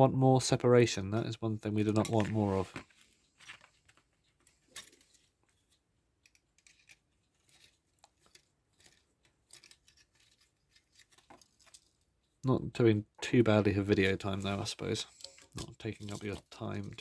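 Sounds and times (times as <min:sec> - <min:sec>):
small metal parts clicking: 0:03.9 - 0:12.4, 0:14.0 - 0:17.0.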